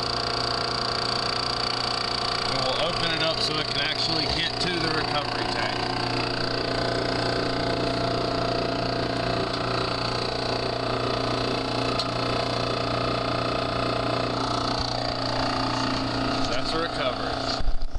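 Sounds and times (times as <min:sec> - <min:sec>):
refrigerant recovery machine humming: 0:00.0 - 0:17.9.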